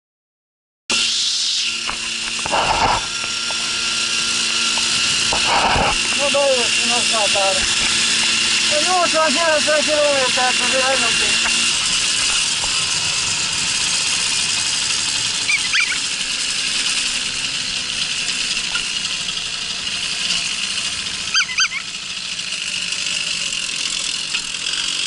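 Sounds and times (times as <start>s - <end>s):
moped engine running: 1.7s - 25.0s
short high squeaks: 15.2s - 19.4s, 20.1s - 22.3s.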